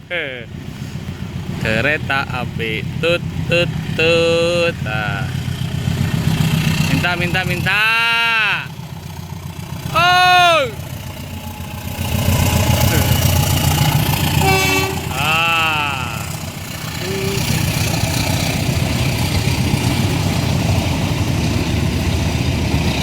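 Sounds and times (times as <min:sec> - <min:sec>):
large vehicle engine rumbling: 0:00.0 - 0:23.0
call sliding up and down in pitch: 0:01.6 - 0:05.4, 0:09.9 - 0:10.8, 0:12.6 - 0:17.6
horn blast: 0:14.3 - 0:16.3.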